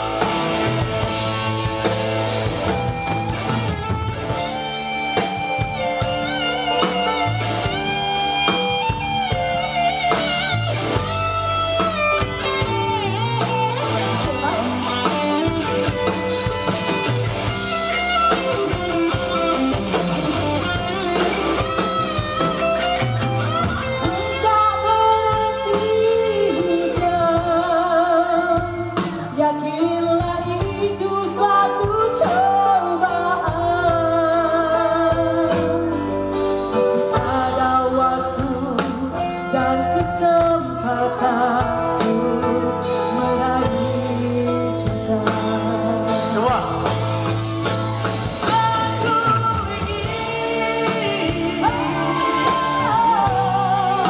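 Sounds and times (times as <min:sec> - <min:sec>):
guitar: 0:00.0 - 0:54.0
live band music: 0:00.0 - 0:54.0
person singing: 0:24.0 - 0:54.0.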